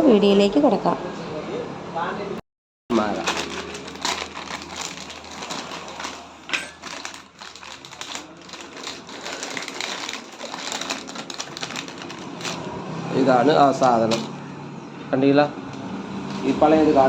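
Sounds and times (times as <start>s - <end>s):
small metal parts clattering: 3.2s - 12.6s.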